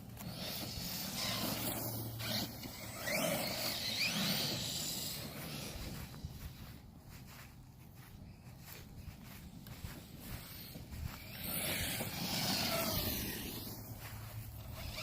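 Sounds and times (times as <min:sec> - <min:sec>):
electric motor whine: 0:00.0 - 0:06.2, 0:10.4 - 0:15.0.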